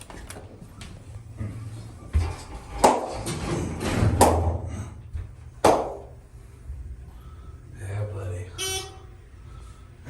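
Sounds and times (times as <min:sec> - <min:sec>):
elevator rumble: 0:00.0 - 0:10.0
elevator clunks: 0:02.0 - 0:05.0.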